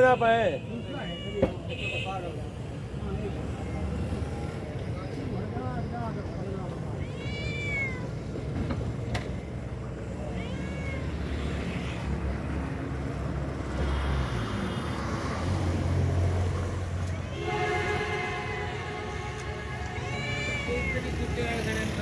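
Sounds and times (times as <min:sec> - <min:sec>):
cat meowing: 0:00.8 - 0:01.6, 0:06.7 - 0:08.3, 0:10.0 - 0:12.2, 0:19.4 - 0:22.0.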